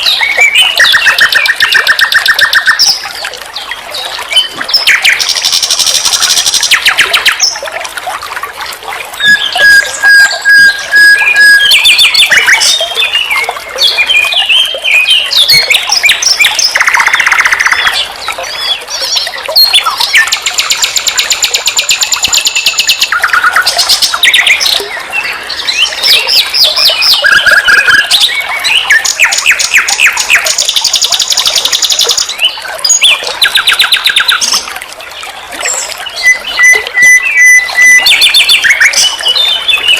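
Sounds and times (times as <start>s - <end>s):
nightingale singing: 9.2s - 13.4s, 36.1s - 39.9s.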